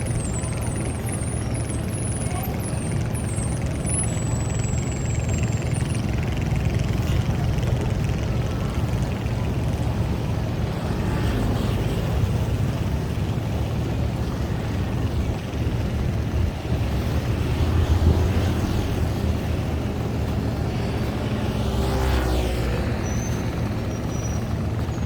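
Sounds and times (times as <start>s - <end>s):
engine running with low rumble: 0.0s - 25.0s.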